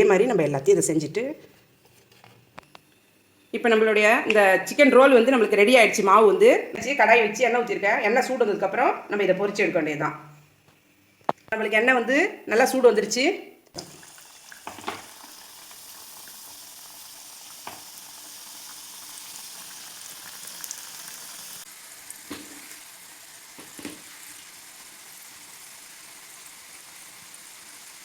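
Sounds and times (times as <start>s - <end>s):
food sizzling in hot oil: 13.8s - 28.0s.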